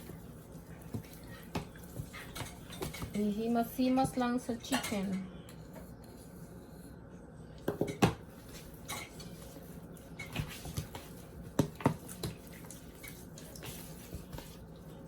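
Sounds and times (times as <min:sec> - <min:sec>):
kitchenware clinking: 0:04.6 - 0:05.3.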